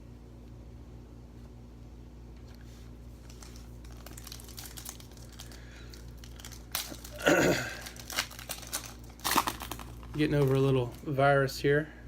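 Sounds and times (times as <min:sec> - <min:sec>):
steady low hum: 0:00.0 - 0:12.0
cards and wrapper crinkling: 0:03.0 - 0:11.3.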